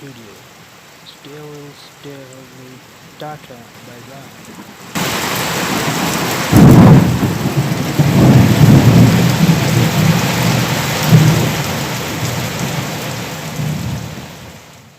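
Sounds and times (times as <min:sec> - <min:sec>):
heavy rain hissing: 0:00.0 - 0:14.9
thunder rolling: 0:05.0 - 0:12.7.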